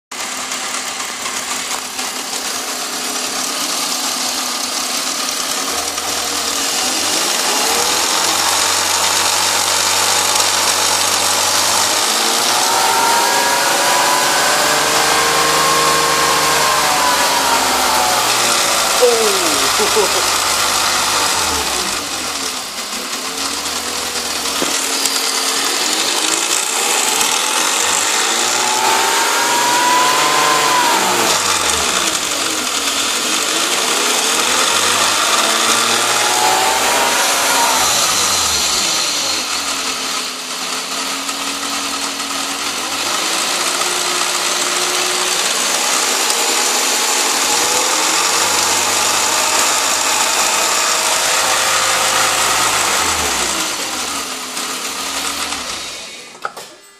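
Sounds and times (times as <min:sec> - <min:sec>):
car engine revving: 0:00.1 - 0:56.5
engine ticking noise: 0:00.2 - 0:45.0.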